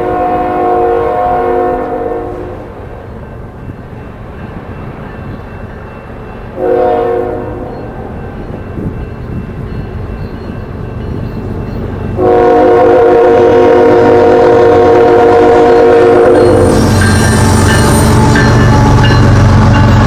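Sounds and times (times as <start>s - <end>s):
locomotive air horn blasts: 0.0s - 2.8s, 6.6s - 7.7s, 12.2s - 20.0s
low rumble of approaching train: 0.0s - 20.0s.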